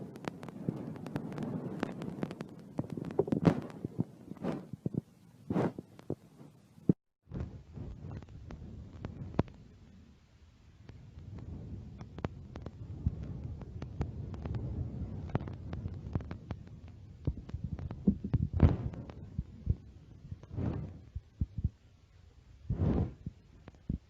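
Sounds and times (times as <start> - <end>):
low rumble: 0.0 - 24.0
short swells of noise: 20.5 - 21.2, 22.7 - 23.3.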